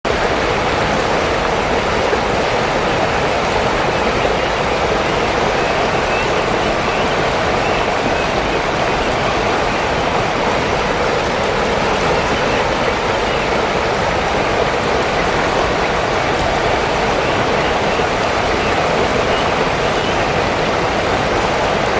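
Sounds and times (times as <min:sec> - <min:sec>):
water rushing: 0:00.0 - 0:21.9.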